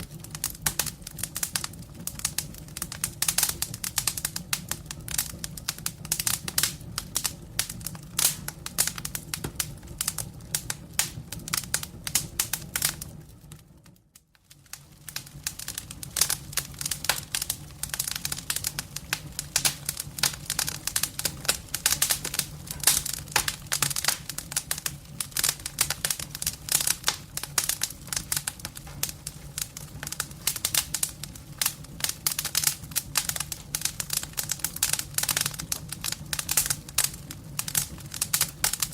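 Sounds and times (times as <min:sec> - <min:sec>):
campfire crackling and popping: 0:00.0 - 0:38.9
low rumble of burning wood: 0:00.0 - 0:38.9.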